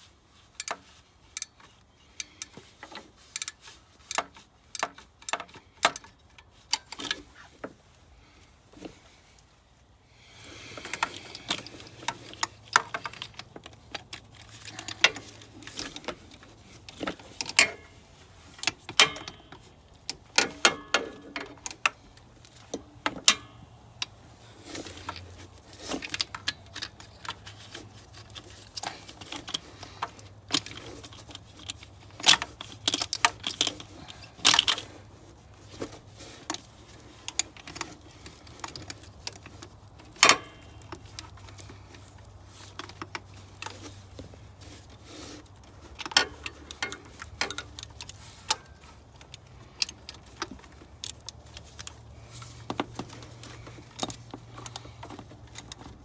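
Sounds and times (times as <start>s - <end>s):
hand tools clinking on metal: 17.4s - 18.0s, 18.7s - 21.8s, 45.9s - 56.0s.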